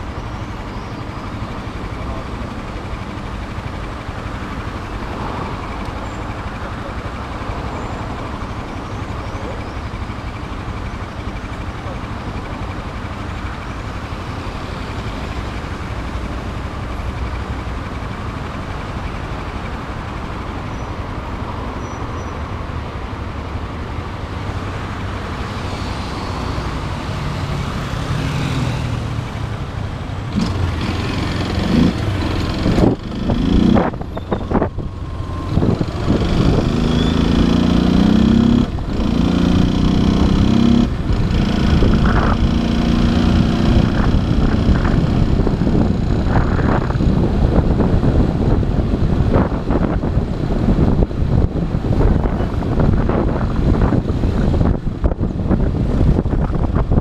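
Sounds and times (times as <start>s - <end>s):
motorcycle engine accelerating: 25.8s - 57.0s.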